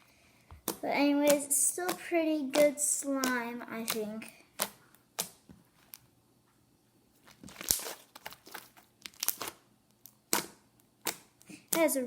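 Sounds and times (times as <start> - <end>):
slime clicking and popping: 0.6 - 5.5, 9.0 - 11.9.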